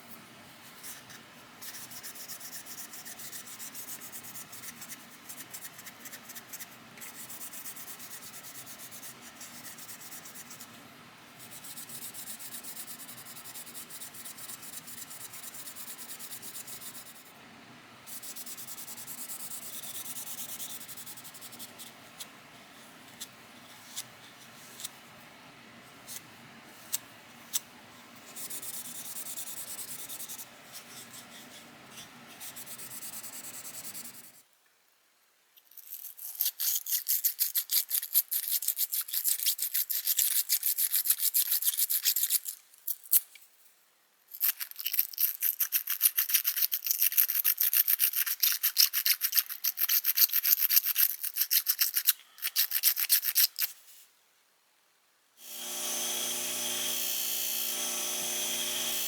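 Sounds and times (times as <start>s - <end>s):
faint handling sounds: 20.7s - 28.6s.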